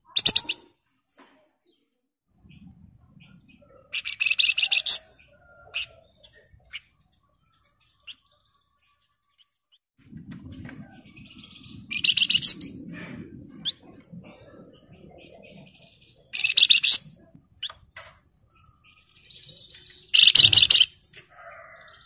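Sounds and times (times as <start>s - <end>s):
bird chirps: 0.0s - 0.7s, 1.7s - 9.6s, 10.8s - 22.0s
low rumbling noise: 10.0s - 19.0s
songbird rattling trill: 16.3s - 17.8s, 18.5s - 22.0s.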